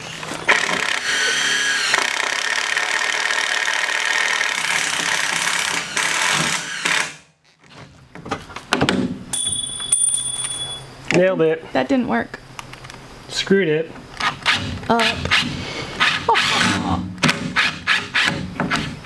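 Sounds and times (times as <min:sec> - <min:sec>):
power drill driving into wood: 0:00.0 - 0:02.6, 0:04.6 - 0:07.2.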